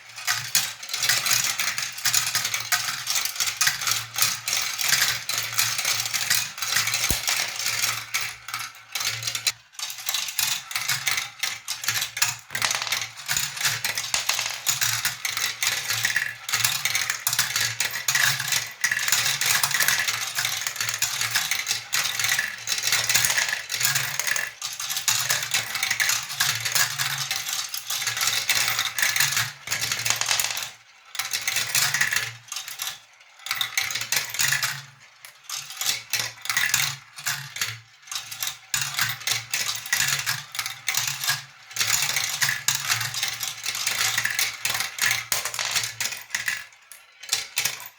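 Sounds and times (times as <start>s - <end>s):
glass marbles clattering on a track: 6.9s - 7.6s, 12.2s - 16.3s, 29.7s - 30.8s, 41.9s - 47.9s.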